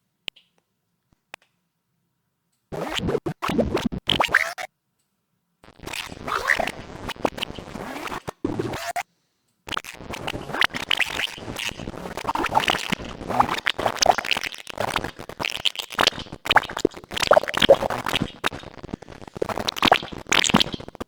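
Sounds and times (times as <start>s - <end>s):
glitchy crackling clicks: 2.7s - 4.7s, 5.6s - 9.1s, 9.7s - 21.0s.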